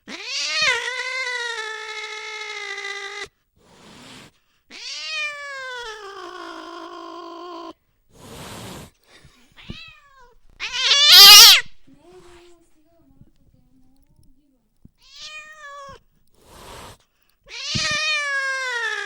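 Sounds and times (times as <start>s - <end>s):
cat hissing: 0.0s - 12.4s, 15.1s - 19.0s
cat yowling: 0.1s - 3.3s, 4.7s - 7.8s, 9.6s - 11.8s, 15.0s - 16.0s, 17.5s - 19.0s.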